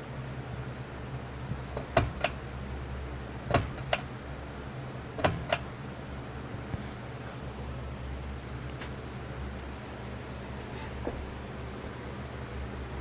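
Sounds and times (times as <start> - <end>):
ceiling fan humming: 0.0 - 13.0
sharp clicks: 1.8 - 2.4, 3.5 - 4.1, 5.2 - 5.7.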